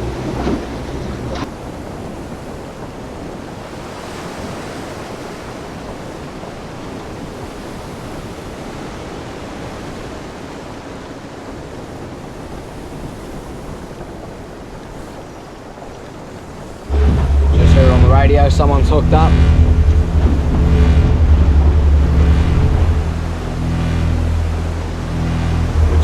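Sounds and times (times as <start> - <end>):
sea washing around boat: 0.0 - 26.0.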